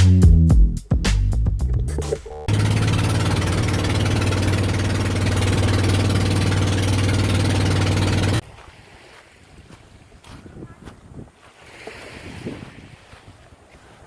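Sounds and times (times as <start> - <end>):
motor engine humming: 0.0 - 8.4.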